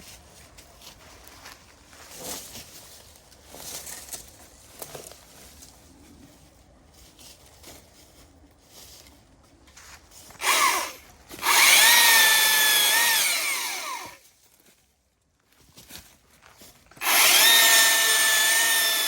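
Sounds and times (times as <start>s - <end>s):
battery chainsaw whine: 10.4s - 14.2s, 17.0s - 19.0s.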